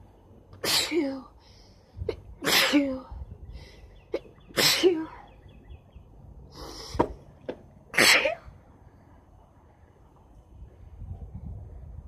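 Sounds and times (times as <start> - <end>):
woman sneezing: 2.4 - 2.9, 8.0 - 8.4.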